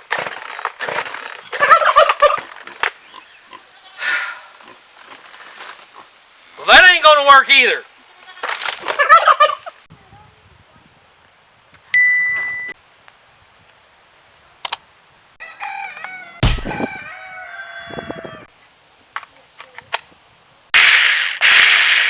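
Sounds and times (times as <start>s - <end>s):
short ding: 12.0s - 12.8s
rooster crowing: 15.4s - 18.5s
heavy thump: 16.4s - 17.0s.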